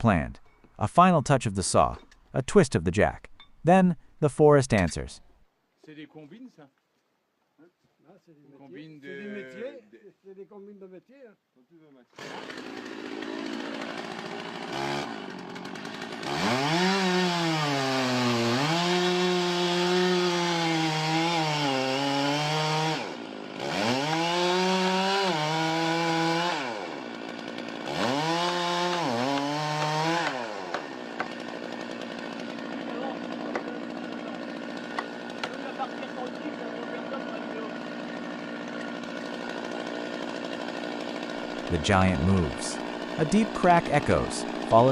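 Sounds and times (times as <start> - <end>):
chainsaw revving: 12.2 - 44.9.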